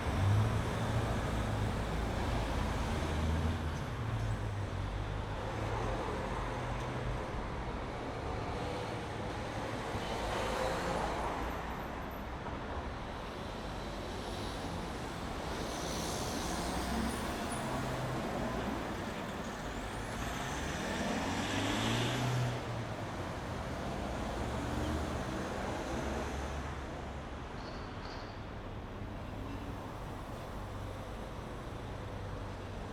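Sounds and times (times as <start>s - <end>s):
vehicles passing: 15.6s - 27.6s.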